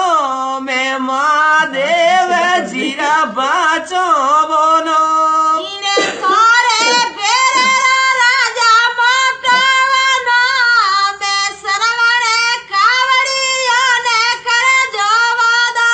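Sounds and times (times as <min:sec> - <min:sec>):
person singing solo: 0:01.5 - 0:03.4.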